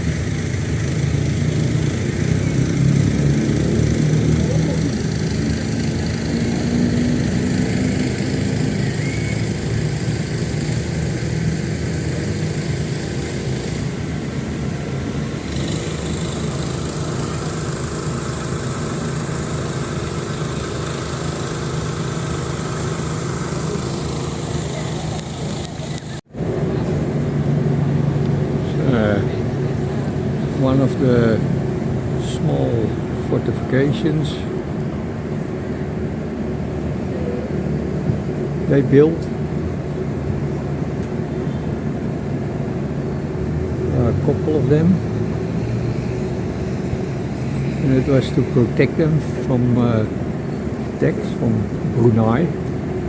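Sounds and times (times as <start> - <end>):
small engine droning: 0.0 - 53.0.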